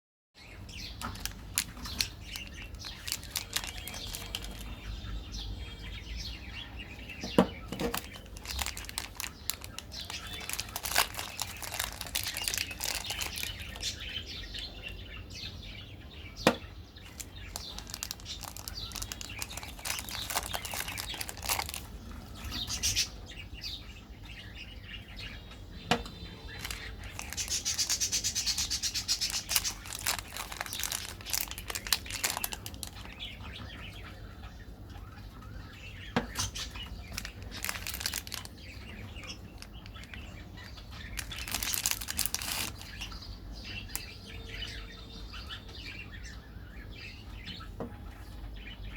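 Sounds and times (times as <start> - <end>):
plastic packaging crinkling: 0.9 - 4.9, 7.3 - 14.2, 16.5 - 23.0, 26.4 - 33.4, 36.3 - 44.1.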